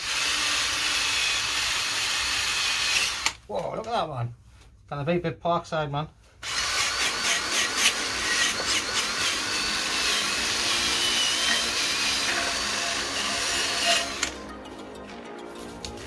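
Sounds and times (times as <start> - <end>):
power tool wire brush scrubbing metal: 6.4 - 14.5.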